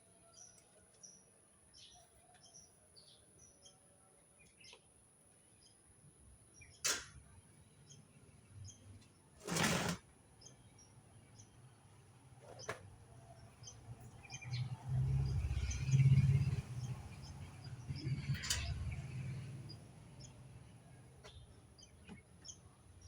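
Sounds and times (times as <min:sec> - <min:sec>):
sharp click: 0:06.8 - 0:07.2.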